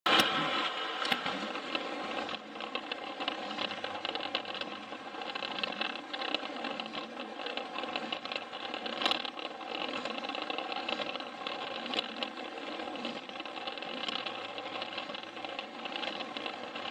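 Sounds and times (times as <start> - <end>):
toy train motor whirring: 1.0 - 16.9
wheels clicking on plastic track: 1.0 - 16.9.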